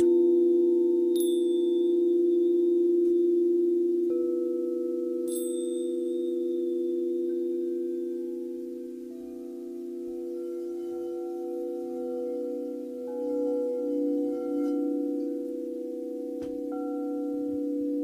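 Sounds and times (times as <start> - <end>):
high chime ringing: 0.0 - 18.0
singing bowls ringing: 0.0 - 18.0
bowl struck softly: 10.0 - 18.0.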